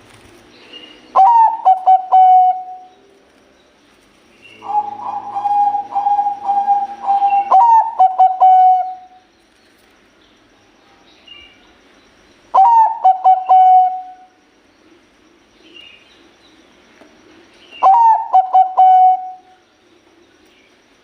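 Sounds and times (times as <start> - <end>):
dove cooing: 0.9 - 3.0, 4.5 - 9.2, 12.5 - 14.3, 17.6 - 19.6.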